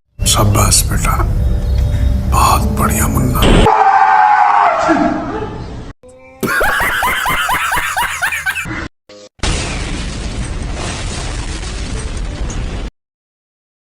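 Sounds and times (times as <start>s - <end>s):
loud blast with low rumble: 0.2s - 3.7s.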